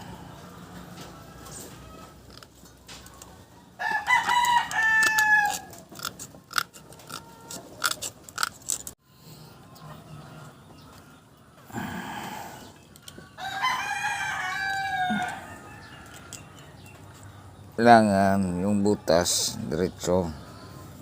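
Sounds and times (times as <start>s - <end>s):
rooster crowing: 3.6s - 5.8s, 13.4s - 16.4s.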